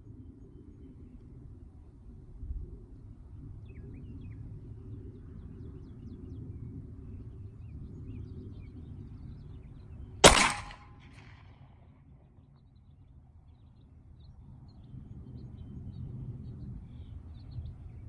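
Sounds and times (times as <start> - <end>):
pistol shot with echo: 10.2 - 11.5.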